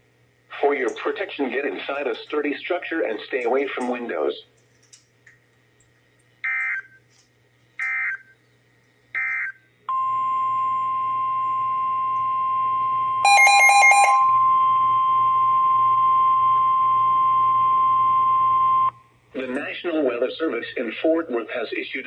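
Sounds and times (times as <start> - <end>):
steady warning alarm tone: 9.2 - 19.0
loud pulsing beep: 13.1 - 18.9
digital code bursts: 13.3 - 14.5.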